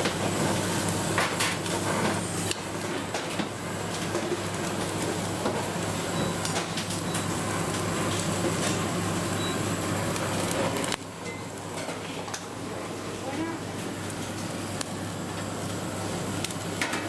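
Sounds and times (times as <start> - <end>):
mechanical hum: 0.0 - 17.0.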